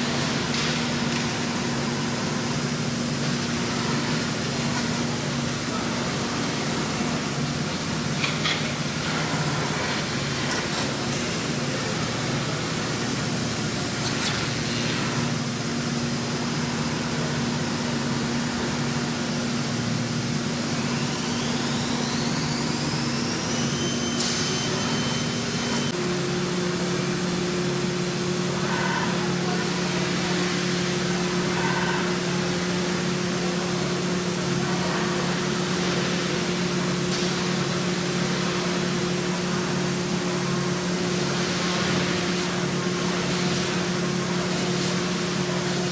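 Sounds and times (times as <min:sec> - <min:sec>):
high machine whine: 0:00.0 - 0:45.9
milling machine humming: 0:00.0 - 0:45.9.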